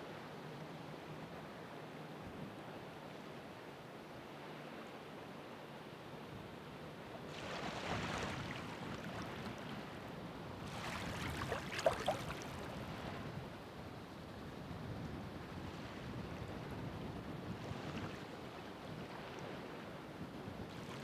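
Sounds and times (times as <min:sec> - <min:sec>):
ocean waves washing onto shore: 0:06.9 - 0:13.9.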